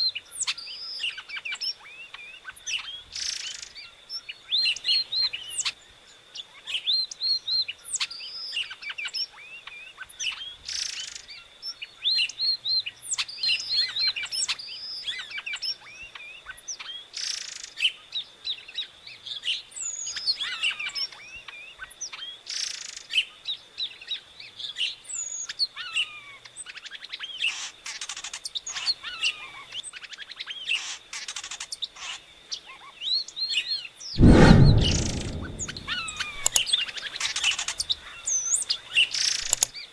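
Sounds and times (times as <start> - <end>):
loud thump: 34.2 - 36.6.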